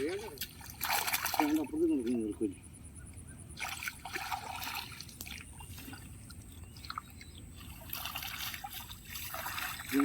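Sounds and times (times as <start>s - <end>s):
loud water splashing: 0.0s - 1.6s, 7.8s - 10.0s
stream water trickling: 0.0s - 2.5s, 3.5s - 10.0s.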